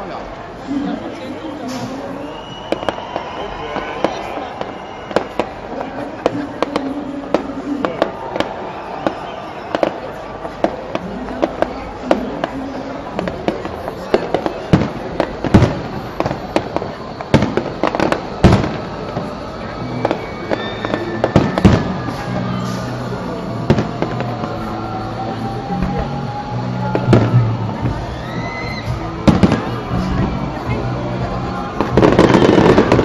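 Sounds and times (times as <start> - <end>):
voices: 0.0 - 33.0
fireworks bangs and crackles: 1.3 - 33.0
music: 19.4 - 33.0.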